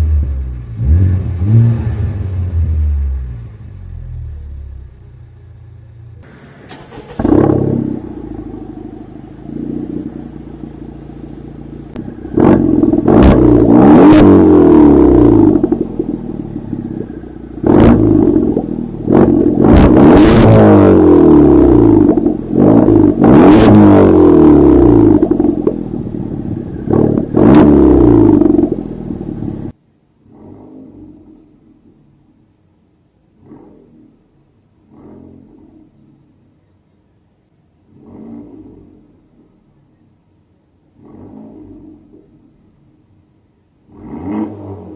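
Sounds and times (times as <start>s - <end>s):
car engine revving: 0.0s - 29.7s, 41.0s - 42.3s, 43.9s - 44.9s.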